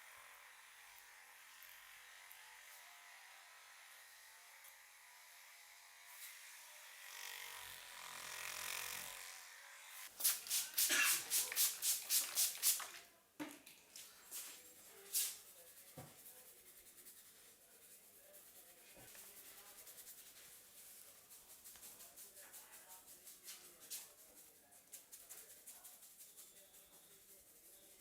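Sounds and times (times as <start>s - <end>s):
hands rubbing hair and scalp: 10.1s - 13.0s, 14.3s - 28.0s.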